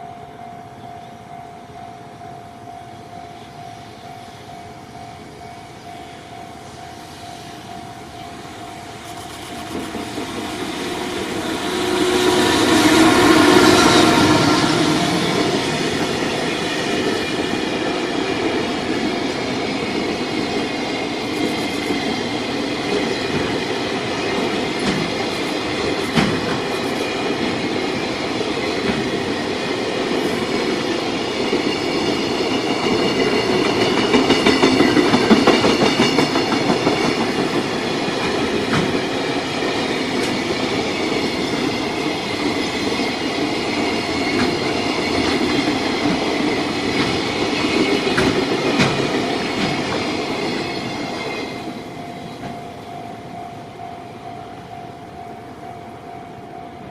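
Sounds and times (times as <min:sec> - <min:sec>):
train wheels rumbling on rails: 0:01.7 - 0:56.9
fast train clatter: 0:07.4 - 0:52.9
high ringing: 0:10.2 - 0:20.0.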